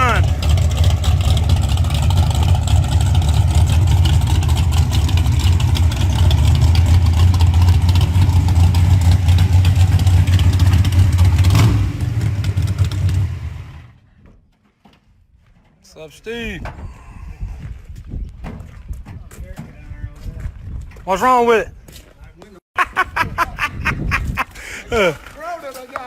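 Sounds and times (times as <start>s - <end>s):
car engine with rumbling exhaust: 0.0s - 14.0s.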